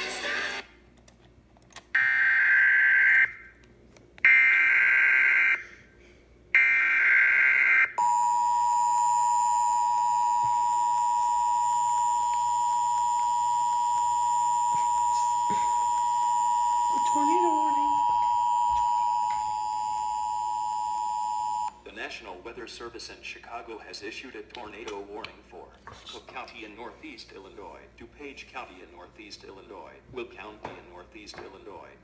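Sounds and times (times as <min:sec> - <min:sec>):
two-tone attention signal: 0:08.0 - 0:21.7.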